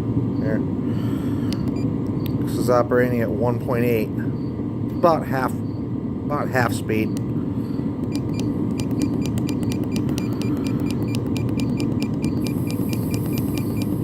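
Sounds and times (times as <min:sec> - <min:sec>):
air heater low rush: 0:00.0 - 0:14.0
fast light ticking: 0:08.0 - 0:14.0.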